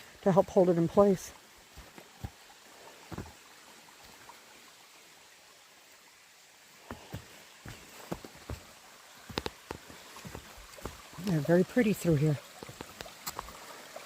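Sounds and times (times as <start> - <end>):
faint steady hiss: 0.0 - 14.0
footsteps on rocky trail: 1.6 - 3.4, 6.8 - 13.6.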